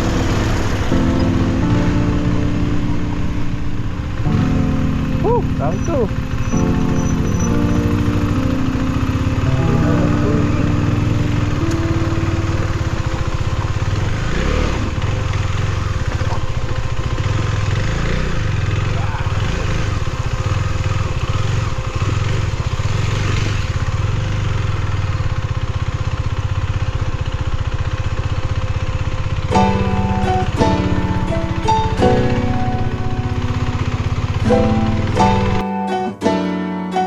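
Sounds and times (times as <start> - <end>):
wind and road noise: 0.0 - 4.3, 11.3 - 27.4
motorcycle engine running: 0.0 - 35.7.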